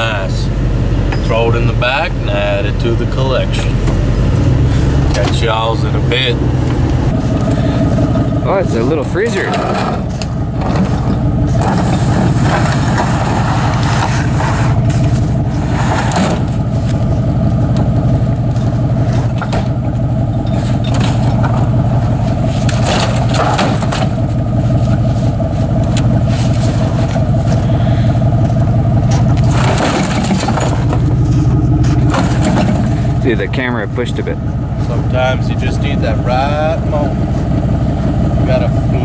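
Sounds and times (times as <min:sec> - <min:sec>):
truck engine running: 0:00.0 - 0:39.0
knocks and scrapes: 0:09.0 - 0:27.8, 0:28.4 - 0:33.3.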